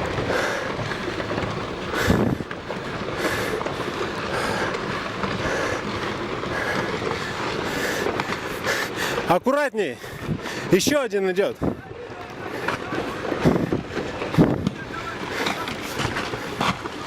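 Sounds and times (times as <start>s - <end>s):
rocks tumbling and rumbling: 0.0s - 17.0s
sharp rock crack: 11.6s - 17.0s.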